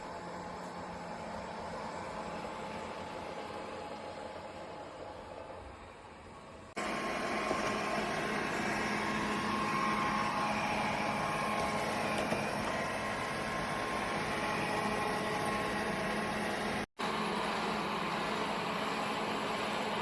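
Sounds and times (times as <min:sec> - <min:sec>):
robot vacuum cleaner whirring: 0:06.5 - 0:16.8.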